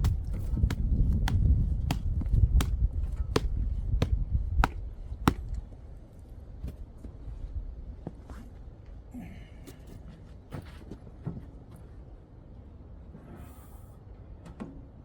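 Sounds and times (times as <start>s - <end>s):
sharp strikes on wood: 0.0s - 5.6s.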